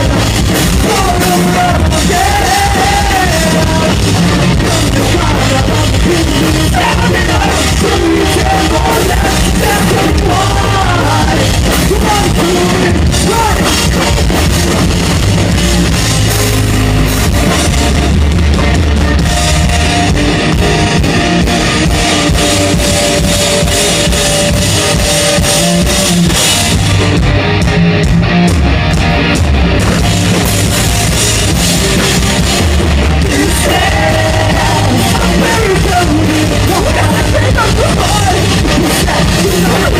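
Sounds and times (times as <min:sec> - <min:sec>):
person singing: 0:00.0 - 0:13.8, 0:33.2 - 0:39.9
electric guitars: 0:00.0 - 0:39.9
pounding drum kit: 0:00.0 - 0:39.9.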